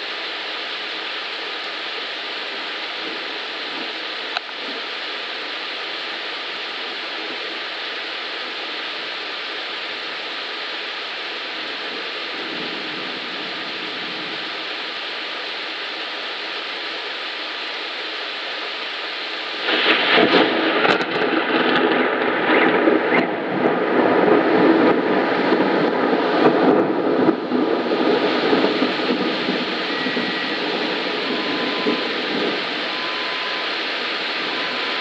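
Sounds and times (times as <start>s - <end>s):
heavy rain pouring: 0.0s - 35.0s
thunder crack and rumble: 19.6s - 35.0s.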